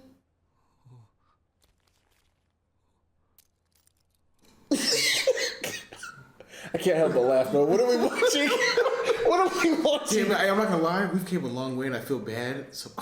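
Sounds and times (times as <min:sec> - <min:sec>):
man laughing: 0:06.8 - 0:10.4.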